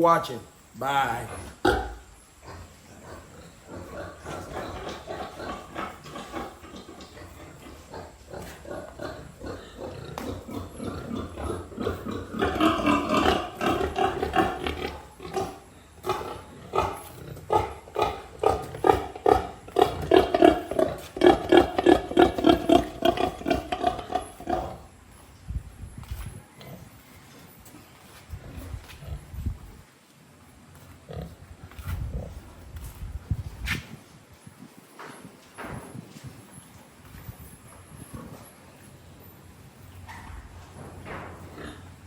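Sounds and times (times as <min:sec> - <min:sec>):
pigs grunting: 0:01.2 - 0:25.0, 0:31.0 - 0:32.6, 0:41.0 - 0:42.0.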